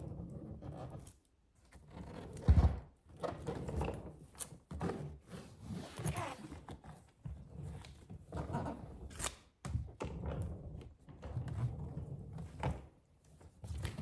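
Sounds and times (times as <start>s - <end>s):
suitcase rubbing and scraping: 0.0s - 9.2s.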